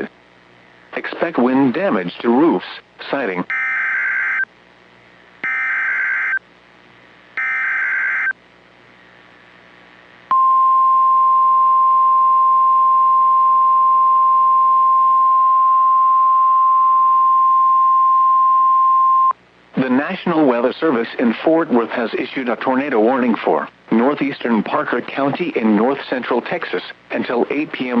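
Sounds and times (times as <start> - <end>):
steady warning alarm tone: 3.5 - 4.4, 5.4 - 6.4, 7.4 - 8.4.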